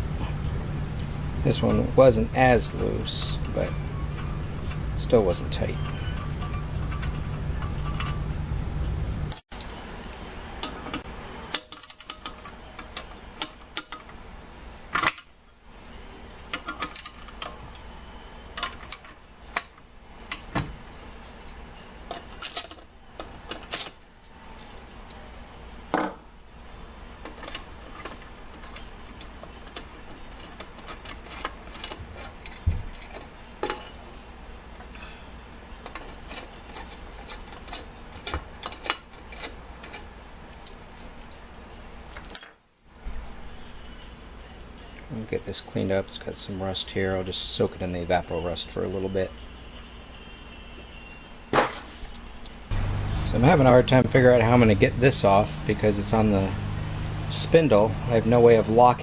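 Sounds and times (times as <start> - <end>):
metal parts and tools clinking: 3.2 - 8.2, 42.2 - 42.6, 51.6 - 53.0.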